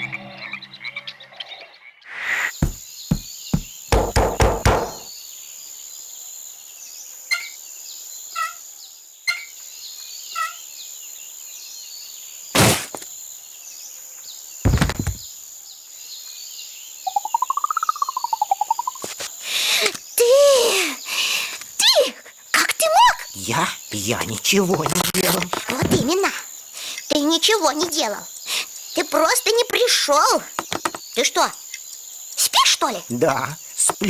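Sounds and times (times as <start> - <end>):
forest background: 0.0 - 34.0
cartoon knocks and thumps: 2.6 - 5.1, 14.7 - 15.2, 30.6 - 31.0
heavy thuds: 2.6 - 5.1.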